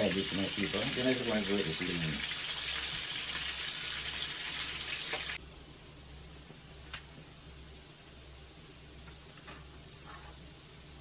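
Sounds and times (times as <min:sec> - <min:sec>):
kitchen tap running: 0:00.0 - 0:05.4.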